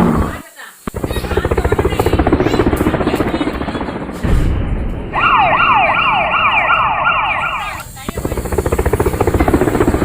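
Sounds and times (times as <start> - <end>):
electronic siren from toy speaker: 5.2 - 7.8.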